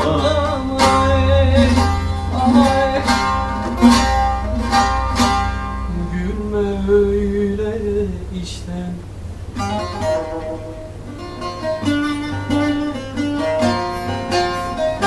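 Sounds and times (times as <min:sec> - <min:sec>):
steady low bass: 0:00.0 - 0:11.2
held melody line: 0:00.0 - 0:15.0
plucked string instrument strumming: 0:00.0 - 0:15.0.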